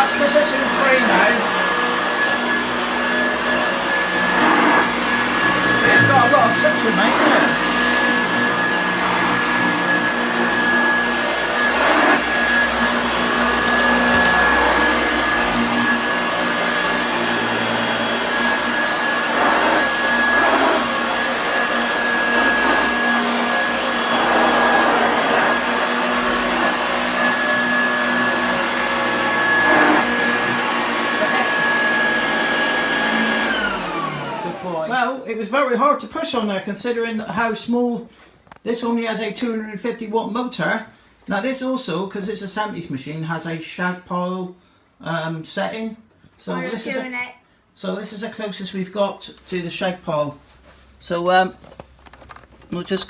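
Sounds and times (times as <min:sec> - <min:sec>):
vacuum cleaner motor whine: 0:00.0 - 0:35.4.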